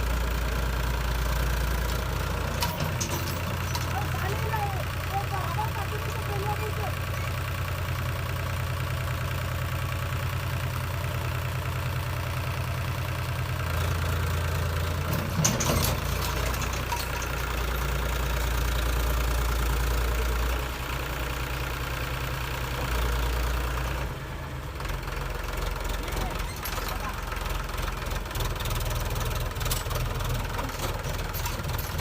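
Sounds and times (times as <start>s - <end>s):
diesel engine of backhoe loader: 0.0s - 32.0s
short clatter: 1.8s - 4.6s, 15.0s - 19.2s, 29.6s - 32.0s.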